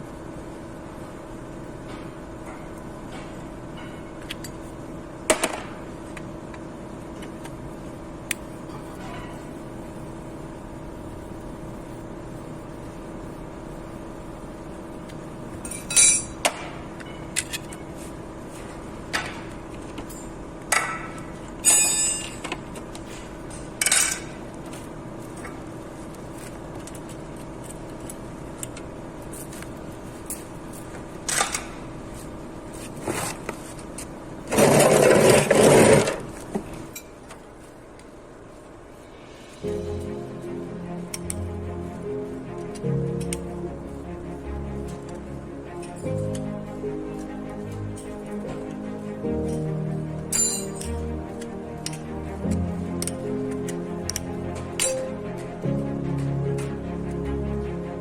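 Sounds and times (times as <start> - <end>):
steady hum: 0.0 - 58.0
metal tools clinking: 15.6 - 16.4, 21.6 - 22.5, 50.3 - 51.0, 54.8 - 55.0.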